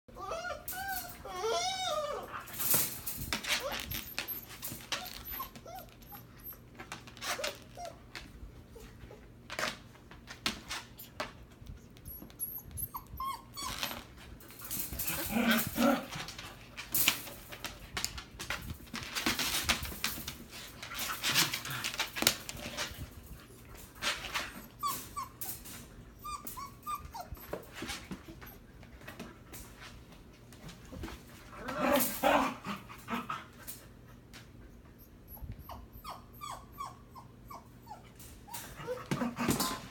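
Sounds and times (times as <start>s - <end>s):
puppy whines and yips: 0.1s - 8.1s, 12.0s - 15.4s, 24.3s - 28.6s, 35.0s - 39.8s
dogs scuffling: 13.7s - 24.8s.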